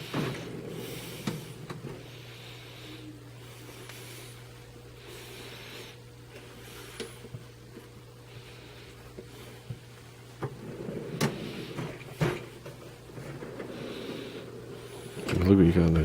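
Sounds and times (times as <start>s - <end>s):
tool cart drawers sliding: 10.4s - 15.6s.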